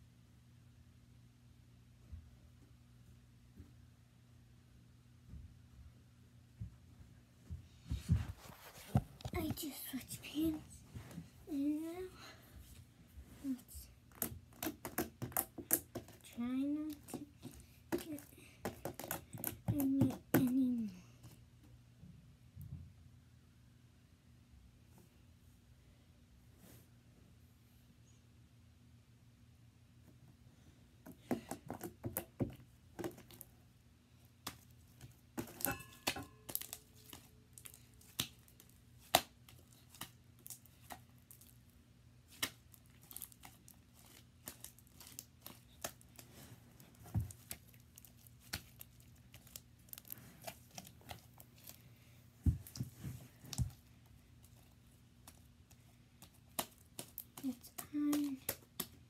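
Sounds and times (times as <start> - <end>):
sticky slime squishing: 14.0 - 20.6, 34.4 - 59.0.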